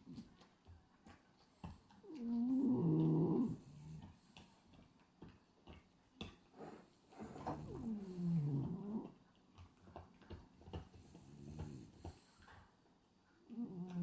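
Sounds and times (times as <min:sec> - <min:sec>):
dog snoring: 0:02.0 - 0:04.5, 0:06.6 - 0:09.2, 0:10.8 - 0:12.5, 0:13.5 - 0:14.0.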